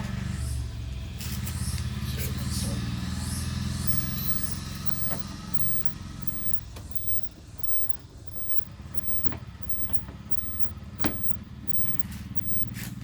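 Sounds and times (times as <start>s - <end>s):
low hum: 3.9s - 12.7s.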